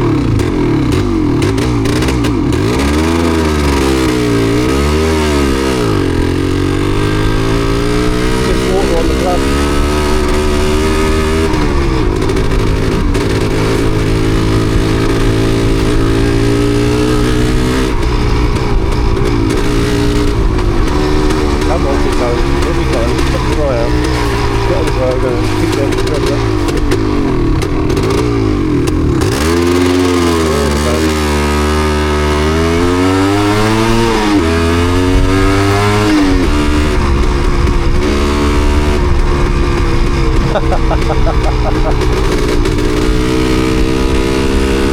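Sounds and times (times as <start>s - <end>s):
two-stroke motorcycle engine revving: 0.0s - 44.9s
two-stroke engine misfiring: 18.5s - 31.2s.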